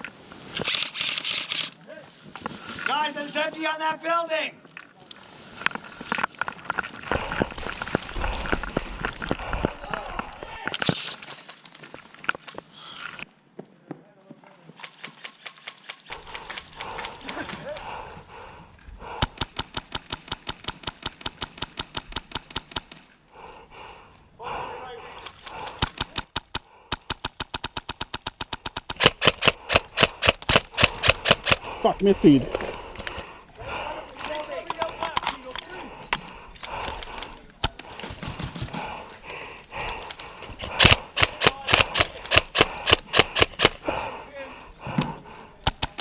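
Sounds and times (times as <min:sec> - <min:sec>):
airsoft gun firing rapidly: 0:25.6 - 0:31.6, 0:40.6 - 0:43.8.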